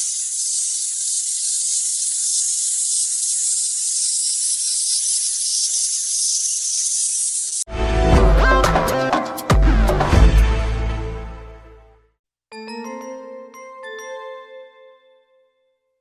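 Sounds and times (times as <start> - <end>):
loud high-pitched hiss: 0.0 - 7.7.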